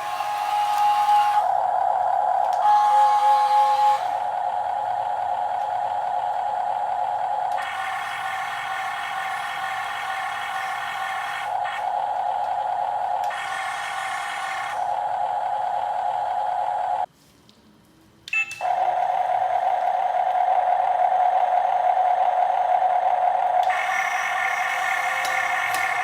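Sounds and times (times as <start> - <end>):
toy excavator motors whining: 0.0 - 17.1, 18.4 - 26.0
click: 2.4 - 2.7, 7.5 - 7.7, 13.2 - 13.4, 25.2 - 26.0.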